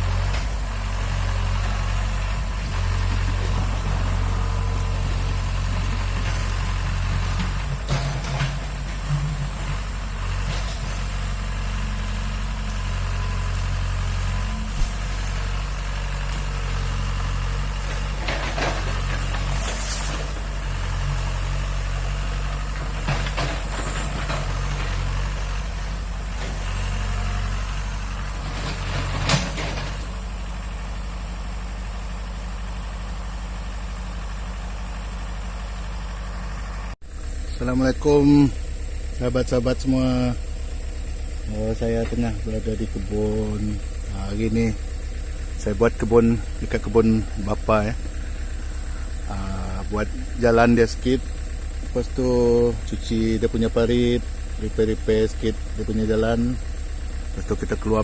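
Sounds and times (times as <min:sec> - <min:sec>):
diesel engine idling: 0:00.0 - 0:58.0
machine clanks and knocks: 0:07.3 - 0:09.8, 0:17.9 - 0:20.2, 0:22.8 - 0:25.1, 0:28.4 - 0:30.1.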